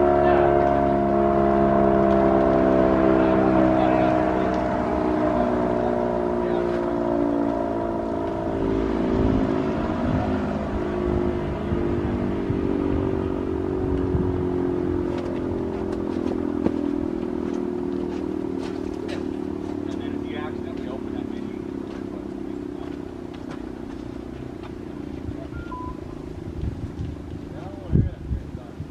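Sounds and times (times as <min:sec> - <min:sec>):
warning siren winding down: 0:00.0 - 0:27.2.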